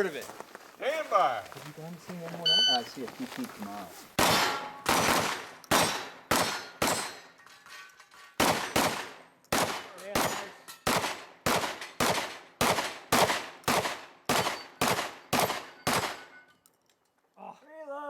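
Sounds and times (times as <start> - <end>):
shotgun shots: 4.2 - 7.3, 8.4 - 16.4.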